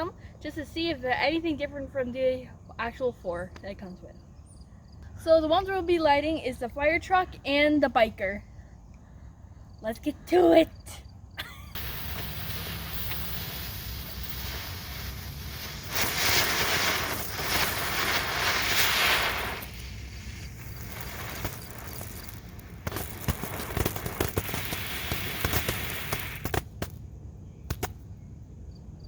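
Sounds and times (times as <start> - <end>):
firework hissing sparks: 11.4 - 27.0
firework crackling pops: 11.4 - 28.0.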